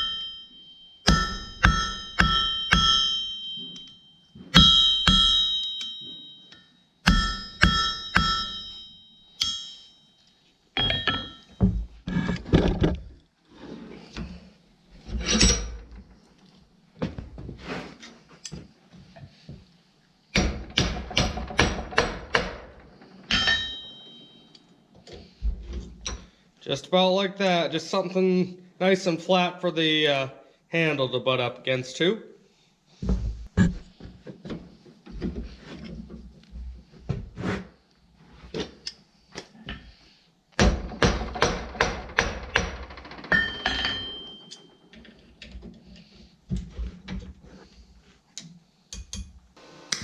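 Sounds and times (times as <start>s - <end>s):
hammer striking steel on anvil: 0.0s - 10.0s, 10.8s - 11.6s, 20.4s - 24.7s, 40.6s - 44.7s
anvil ringing: 0.0s - 10.2s, 10.8s - 11.8s, 20.4s - 24.9s, 40.6s - 44.9s.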